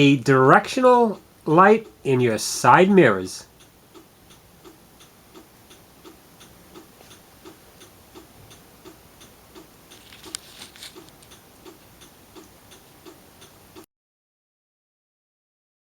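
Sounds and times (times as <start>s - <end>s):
turn signal clicking: 3.6s - 13.6s.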